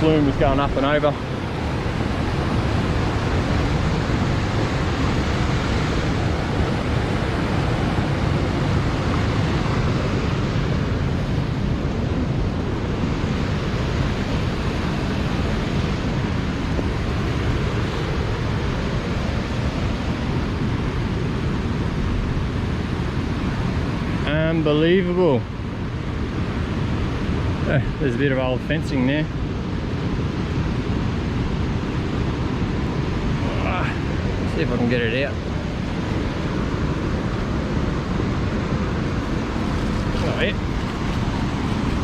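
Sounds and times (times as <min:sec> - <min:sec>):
creek water rushing: 0:00.0 - 0:22.0, 0:31.6 - 0:42.0.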